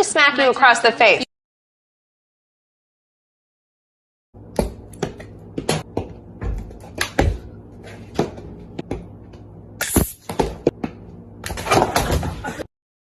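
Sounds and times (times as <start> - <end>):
steady low hum: 4.4 - 12.7.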